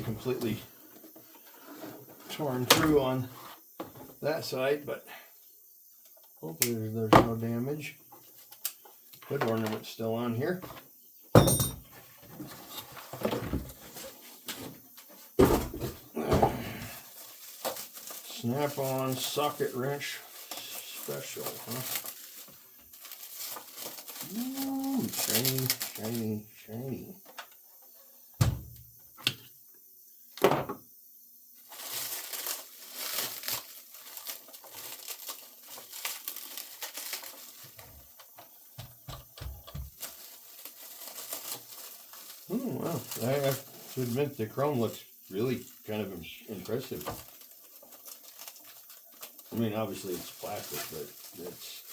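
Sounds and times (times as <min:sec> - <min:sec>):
cardboard rustling and scraping: 0:12.0 - 0:26.2
packaging crinkling and rustling: 0:17.0 - 0:26.3, 0:31.6 - 0:38.6, 0:39.8 - 0:44.2, 0:46.6 - 0:51.9.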